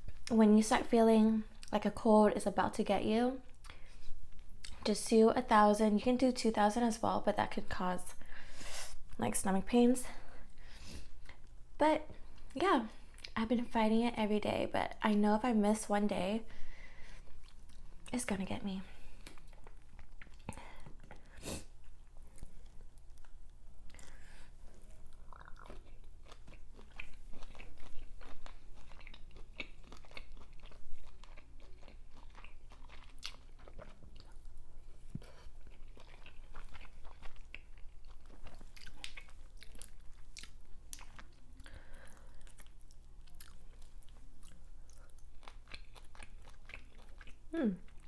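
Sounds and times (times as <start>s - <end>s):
person chewing and biting: 19.2s - 34.6s, 35.2s - 48.0s.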